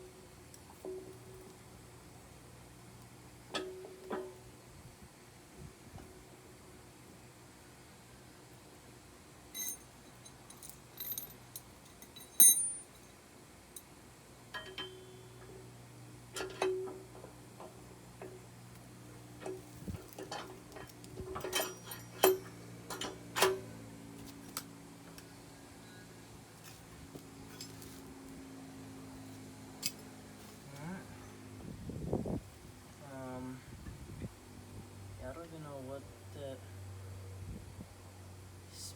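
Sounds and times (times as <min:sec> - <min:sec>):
metal tools clinking: 0:09.6 - 0:13.0, 0:20.2 - 0:23.5, 0:27.4 - 0:28.0.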